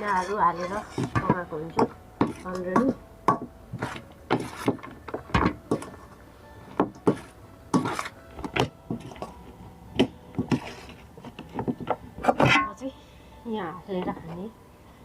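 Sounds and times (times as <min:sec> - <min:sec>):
utensils clinking against a bowl: 0:00.0 - 0:06.1.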